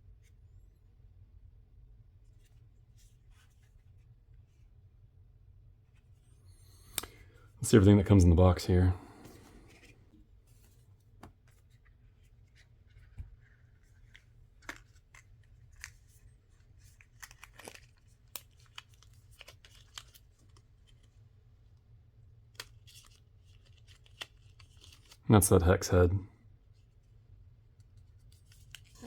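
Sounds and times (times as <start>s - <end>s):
packaging rustling: 12.9s - 21.1s.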